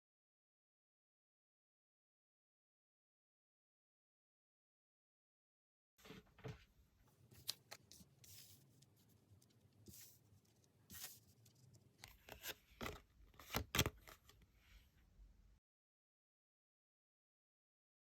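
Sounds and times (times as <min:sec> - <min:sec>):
cards rustling: 0:07.3 - 0:14.3.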